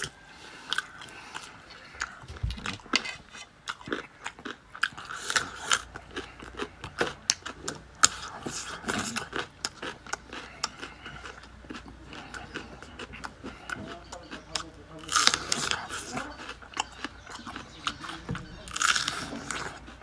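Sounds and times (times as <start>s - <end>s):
person chewing crunchy food: 0.0s - 20.0s.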